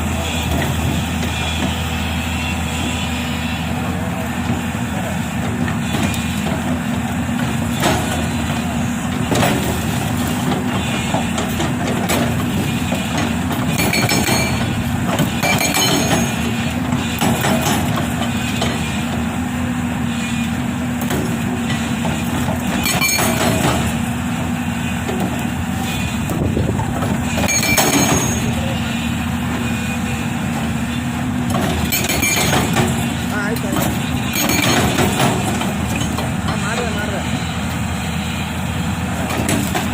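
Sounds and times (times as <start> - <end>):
excavator engine running: 0.0 - 39.9
hydraulic breaker hammering rock: 5.4 - 19.3, 20.2 - 24.2, 25.0 - 37.4, 39.2 - 39.9
sharp metal clanks: 13.7 - 16.5, 22.8 - 23.9, 27.4 - 28.6, 31.6 - 33.1, 33.8 - 36.6.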